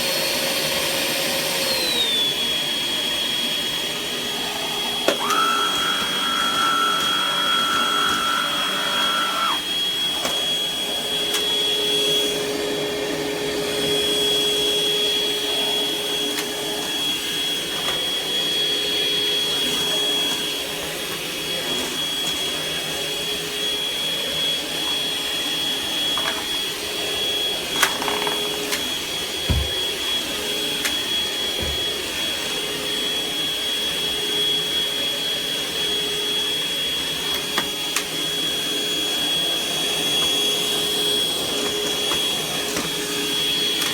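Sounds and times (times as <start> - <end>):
stick vacuum running with whine: 0.0 - 43.9.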